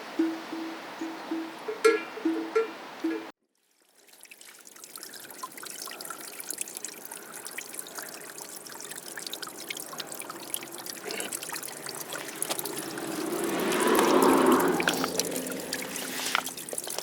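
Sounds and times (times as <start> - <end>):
water trickling in a stream: 0.0 - 17.0.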